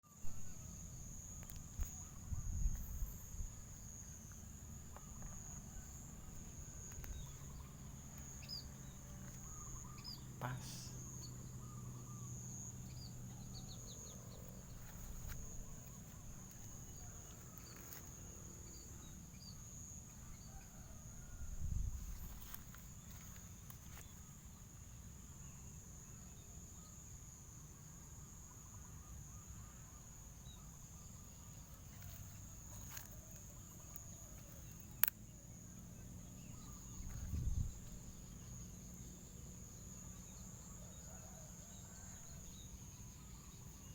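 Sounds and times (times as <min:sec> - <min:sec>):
insects droning: 0:00.0 - 0:43.9
faint bird chirps: 0:01.4 - 0:18.0.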